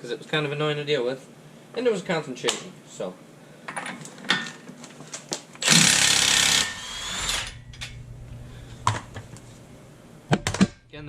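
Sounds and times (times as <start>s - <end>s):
impact wrench hammering: 5.6s - 8.0s
impact wrench spinning whir: 5.6s - 9.6s.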